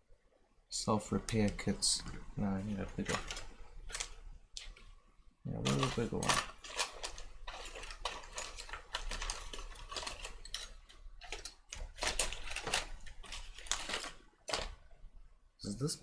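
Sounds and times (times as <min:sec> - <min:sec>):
small screwdrivers clattering: 0:05.6 - 0:14.8.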